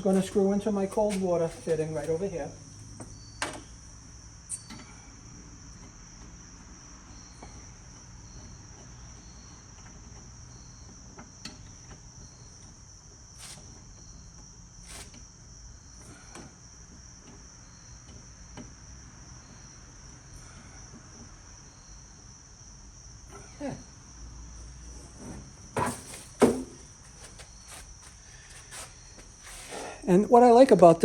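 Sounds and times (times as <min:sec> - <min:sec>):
crickets trilling: 0:00.0 - 0:31.0.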